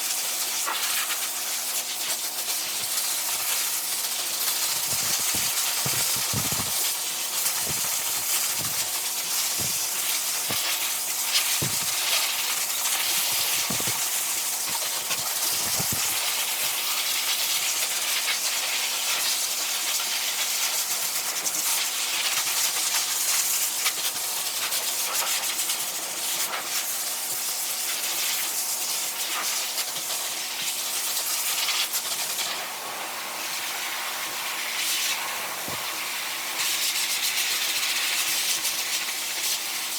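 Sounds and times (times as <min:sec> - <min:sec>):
pet dryer blowing air: 0:02.6 - 0:16.9, 0:32.5 - 0:36.8
soft knocks: 0:11.6 - 0:12.0.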